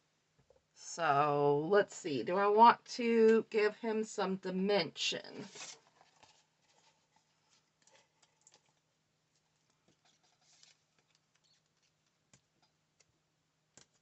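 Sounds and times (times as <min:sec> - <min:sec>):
paper card rustling: 0:05.4 - 0:12.2.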